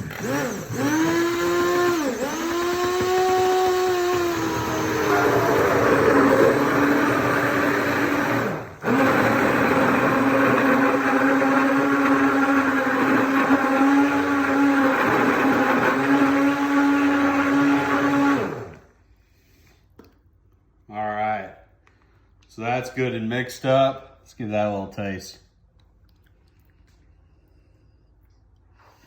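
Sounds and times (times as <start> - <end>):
electric mixer motor running: 0.0 - 18.9.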